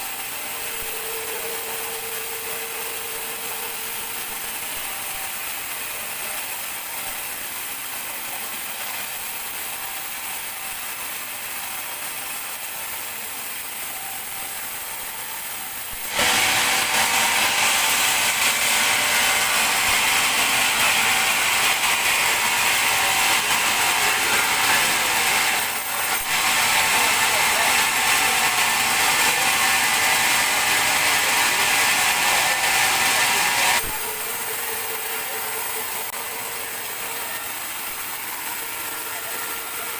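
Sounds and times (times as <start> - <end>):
bandsaw cutting through log: 0.0 - 39.9
bandsaw running: 0.0 - 39.9.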